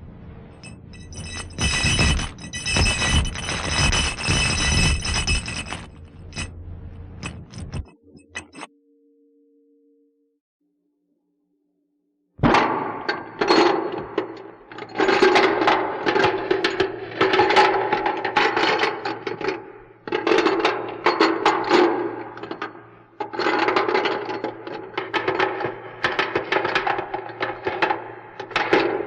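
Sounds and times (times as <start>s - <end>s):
dense rattling and clattering: 0.6s - 8.5s.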